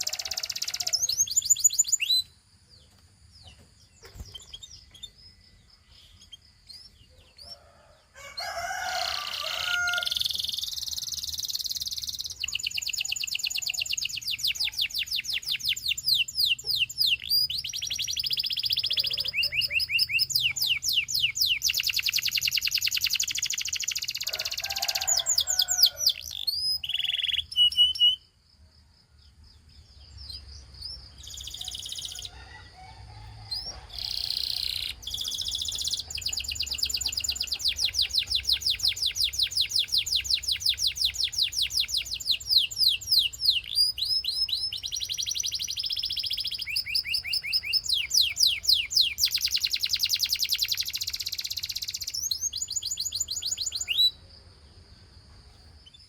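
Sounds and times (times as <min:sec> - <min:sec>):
canary trilling: 0:00.0 - 0:02.3, 0:06.2 - 0:28.2, 0:31.2 - 0:32.6, 0:33.5 - 0:54.1
thin bird whistle: 0:26.4 - 0:28.3, 0:33.7 - 0:54.1.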